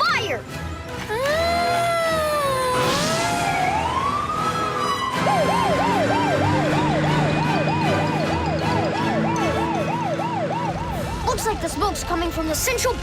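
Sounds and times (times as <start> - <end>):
fire truck siren wailing and yelping: 1.1 - 11.4.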